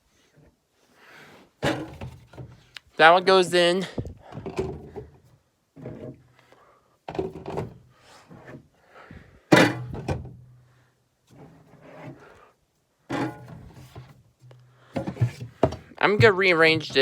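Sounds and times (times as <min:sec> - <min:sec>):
plastic bottles thunking in fridge: 0:01.6 - 0:02.6, 0:04.0 - 0:05.2, 0:09.5 - 0:10.4, 0:13.1 - 0:14.1, 0:15.0 - 0:17.0.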